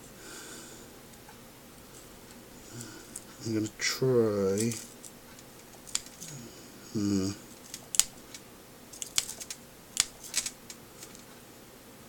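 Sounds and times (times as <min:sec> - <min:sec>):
small tool clicking: 0:04.6 - 0:06.4, 0:07.5 - 0:11.3.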